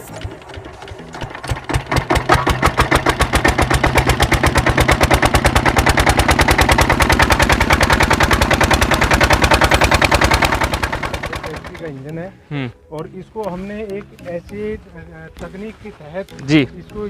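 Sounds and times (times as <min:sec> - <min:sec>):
diesel pump engine running: 0:00.0 - 0:12.9.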